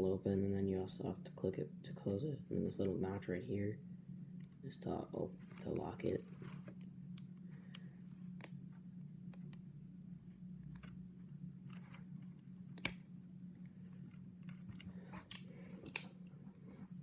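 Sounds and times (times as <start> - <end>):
low steady hum: 0.0 - 17.0
switchblade comb clicking and snapping: 12.8 - 13.0, 15.3 - 16.2.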